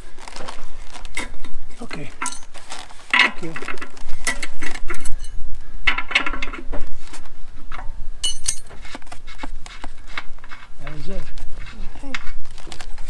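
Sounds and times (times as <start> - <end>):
metal tools clinking and clattering: 2.2 - 2.5, 4.9 - 5.4, 8.2 - 9.0.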